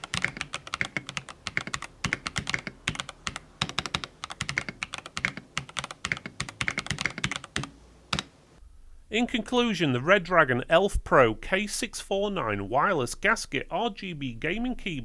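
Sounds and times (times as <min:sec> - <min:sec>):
mechanical keyboard typing: 0:00.0 - 0:08.3.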